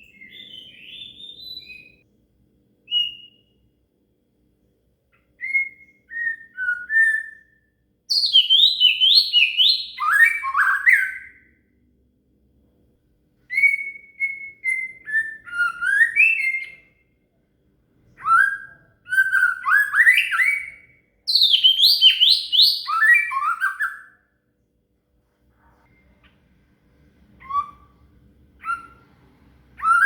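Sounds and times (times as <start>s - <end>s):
bird singing whistled phrases: 0.0s - 2.0s, 2.9s - 3.5s, 5.4s - 11.5s, 13.5s - 17.0s, 18.2s - 24.2s, 27.4s - 29.1s, 29.8s - 30.0s.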